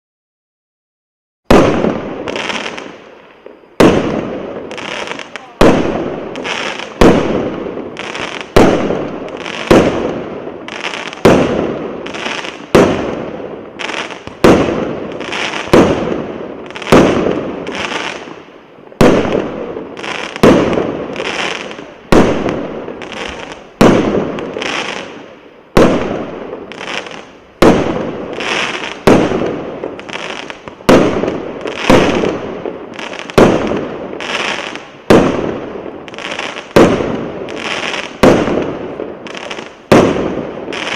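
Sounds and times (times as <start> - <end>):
fireworks battery bangs: 3.8 - 10.2, 27.6 - 32.6.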